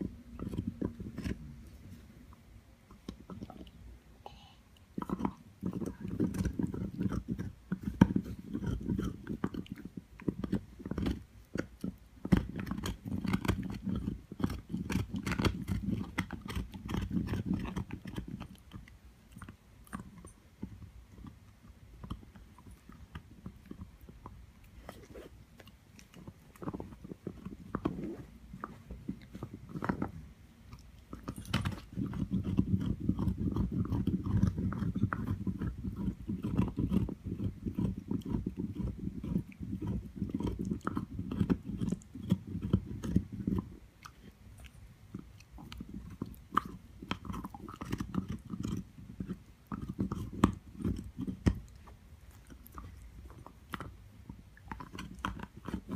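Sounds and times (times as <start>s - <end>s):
dog gnawing on antler: 0.0s - 2.0s, 2.8s - 3.8s, 4.8s - 55.9s.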